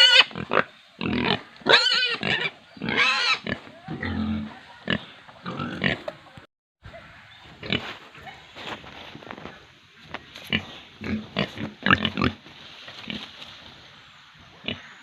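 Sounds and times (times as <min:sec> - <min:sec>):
pigs squealing: 0:00.0 - 0:06.0.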